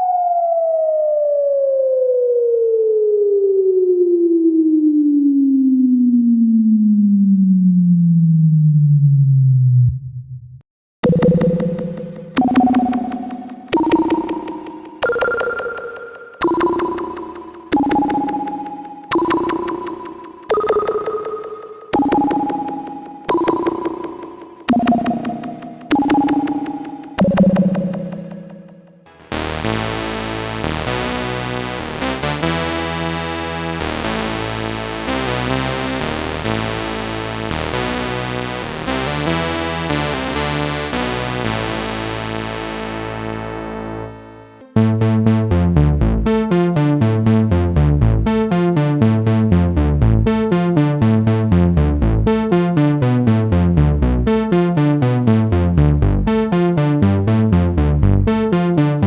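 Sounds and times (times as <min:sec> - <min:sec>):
bright synthesizer chords: 0:11.0 - 0:46.8
plucked low synthesizer sequence: 0:11.0 - 0:58.9.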